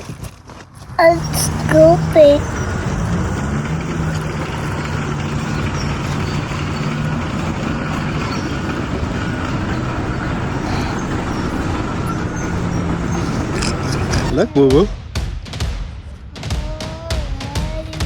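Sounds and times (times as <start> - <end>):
constant rushing noise: 0.0 - 15.0, 16.0 - 18.0
motor humming: 1.2 - 14.3.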